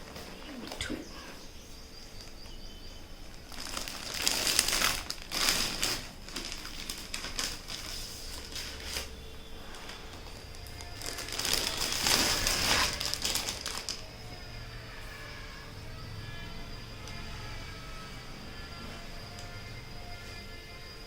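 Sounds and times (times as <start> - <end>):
packaging crinkling and rustling: 0.0 - 0.8, 2.2 - 14.5.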